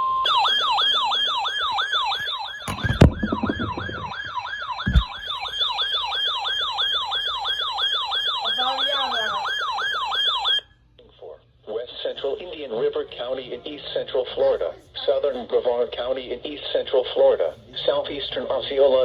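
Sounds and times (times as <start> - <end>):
electronic yelp siren: 0.0 - 10.7
short thumps: 2.2 - 5.4.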